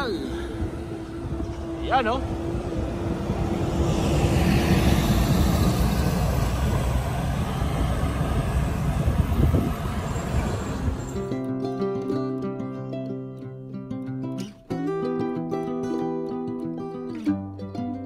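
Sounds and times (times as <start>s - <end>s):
road traffic rumble: 0.0s - 12.0s
acoustic guitar music: 11.0s - 18.0s.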